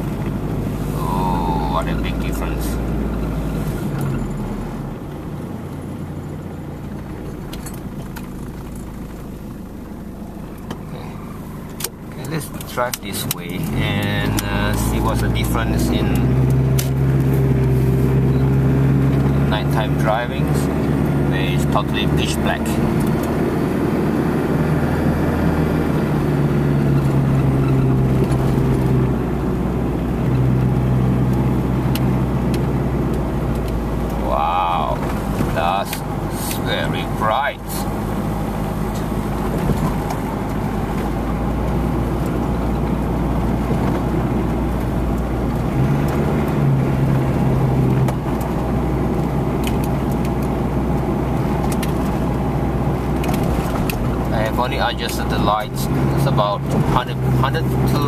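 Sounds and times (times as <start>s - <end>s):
truck engine idling: 0.0s - 58.0s.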